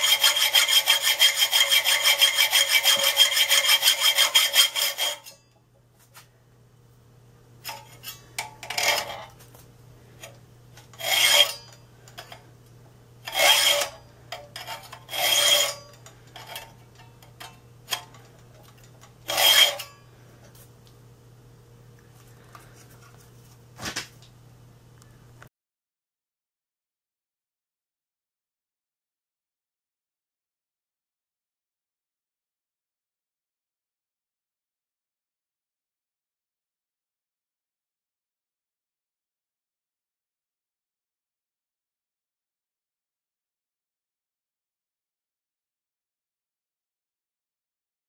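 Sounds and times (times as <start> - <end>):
file strokes on steel blade: 0.0 - 5.5, 7.7 - 9.4, 10.2 - 12.4, 13.3 - 16.8, 19.2 - 20.3.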